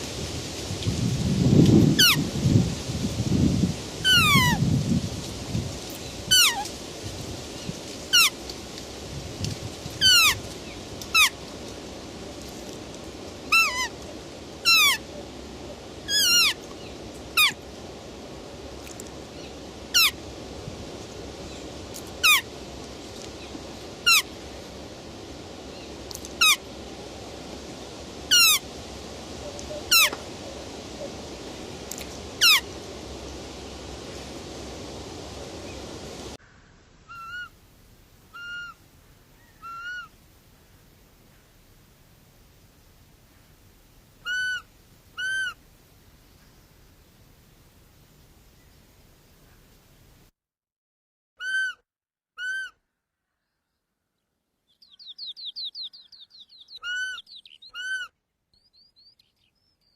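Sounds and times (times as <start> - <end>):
steady background hiss: 0.0 - 50.3
deer high-pitched calls: 51.4 - 51.8, 52.4 - 52.8, 56.8 - 58.1.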